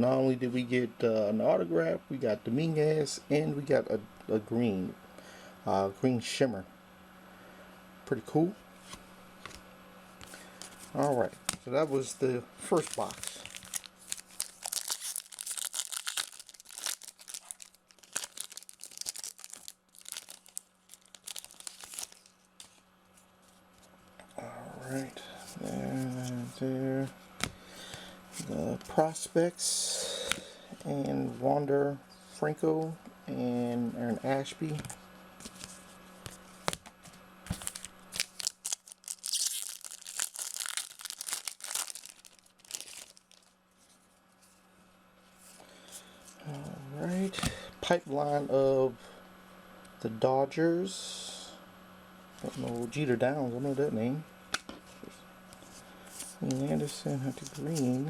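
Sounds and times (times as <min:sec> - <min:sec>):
foil packaging crinkling and tearing: 0:10.2 - 0:23.7, 0:34.6 - 0:44.1, 0:45.6 - 0:48.0, 0:55.0 - 0:58.0.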